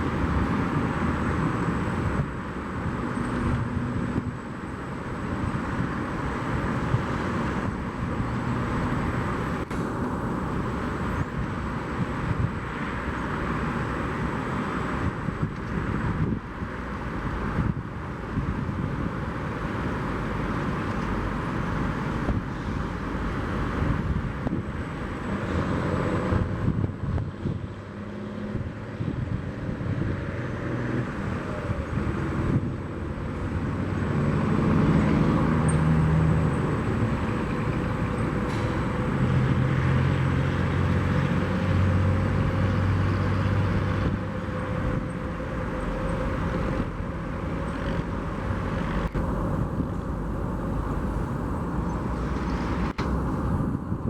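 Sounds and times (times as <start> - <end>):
aircraft engine rumble: 42.2 - 54.0.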